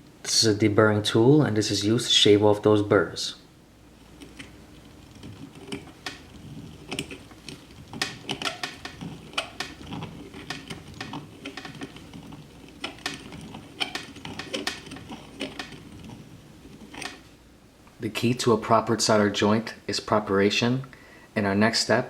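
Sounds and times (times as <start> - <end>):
deburring tool scraping metal pipe: 4.2 - 17.2.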